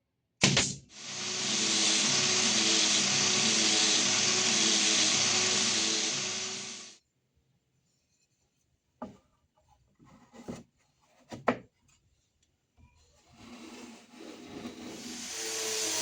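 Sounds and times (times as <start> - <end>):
wood knocking and scraping on wood: 9.0 - 11.9.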